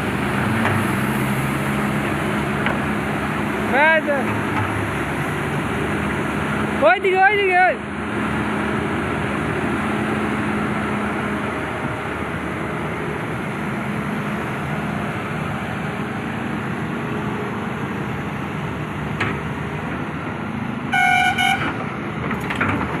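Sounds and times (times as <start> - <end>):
heavy diesel machinery running: 0.0 - 23.0
vehicle horn blast: 20.9 - 21.8.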